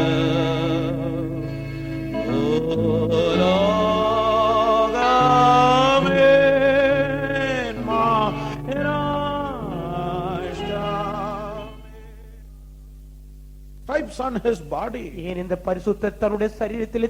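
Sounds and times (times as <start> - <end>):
person singing with vibrato: 0.0 - 12.4
sustained instrumental accompaniment: 0.0 - 12.4.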